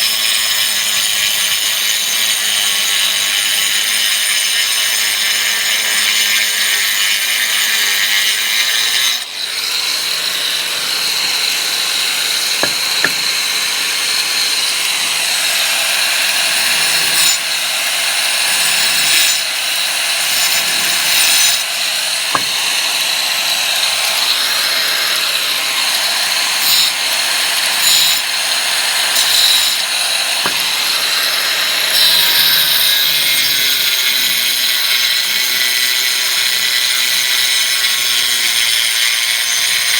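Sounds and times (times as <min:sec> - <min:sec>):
power tool whining and cutting: 0:00.0 - 0:39.9.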